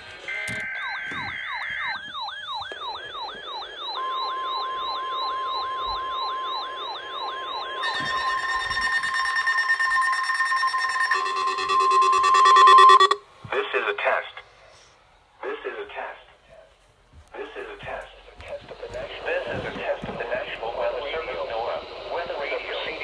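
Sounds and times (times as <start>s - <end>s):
radio alarm falling whoop: 0.6s - 13.2s
steady high tone: 6.7s - 13.2s
harsh buzzing layer: 7.8s - 13.2s.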